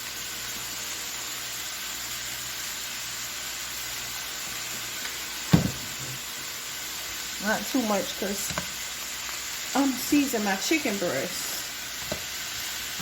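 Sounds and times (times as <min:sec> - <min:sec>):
food sizzling in a pan: 0:00.0 - 0:13.0
knock: 0:05.5 - 0:06.2.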